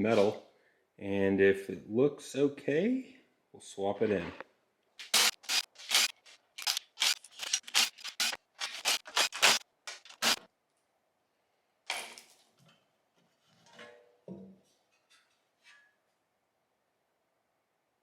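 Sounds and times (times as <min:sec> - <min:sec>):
sharp metallic clicks of hand tools: 0:05.0 - 0:10.4.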